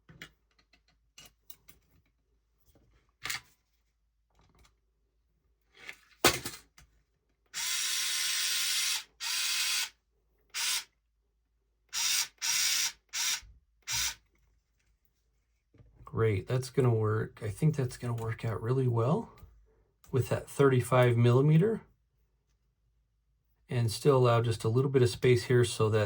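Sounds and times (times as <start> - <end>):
small parts clicking and tapping: 0.0 - 2.2
cordless power screwdriver: 7.6 - 9.9, 10.6 - 10.9, 11.9 - 14.2.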